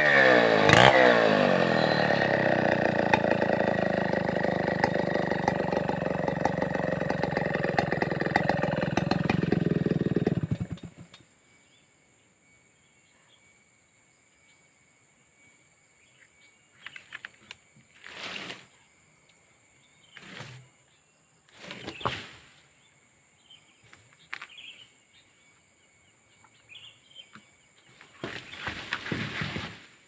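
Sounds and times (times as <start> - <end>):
faint bird chirps: 11.4 - 14.8.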